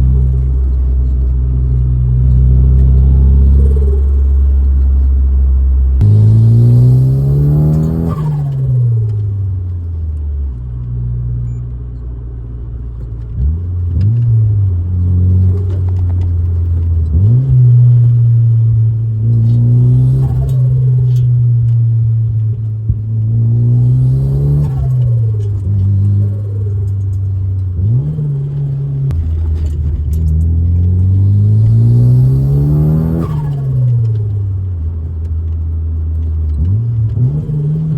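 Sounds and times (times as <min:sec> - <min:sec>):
car engine revving hard: 0:06.0 - 0:09.1, 0:23.2 - 0:27.0, 0:27.7 - 0:29.1, 0:30.6 - 0:34.3.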